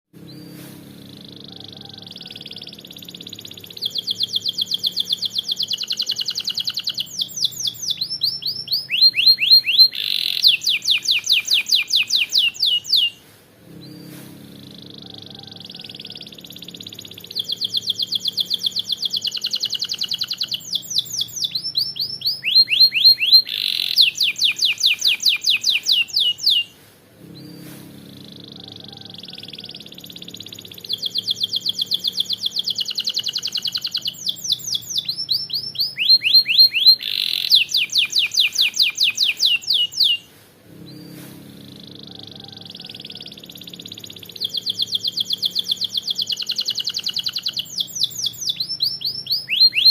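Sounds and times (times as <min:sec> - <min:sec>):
canary singing trills: 0:00.2 - 0:49.9.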